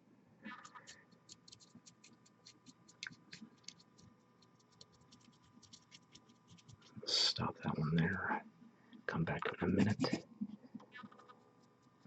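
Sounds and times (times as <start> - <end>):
paintbrush scratchy ticks: 0.5 - 7.1.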